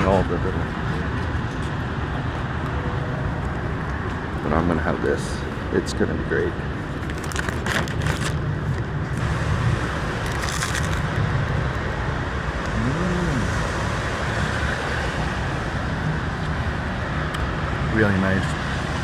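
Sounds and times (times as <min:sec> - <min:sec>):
road traffic: 0:00.0 - 0:19.0
rain: 0:07.0 - 0:19.0.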